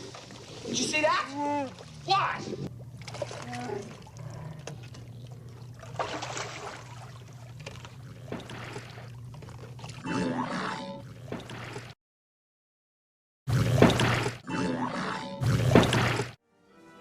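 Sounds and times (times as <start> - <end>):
water splashing and sloshing: 0.0 - 12.0, 13.5 - 14.5, 15.4 - 16.4
steady low hum: 1.8 - 10.0.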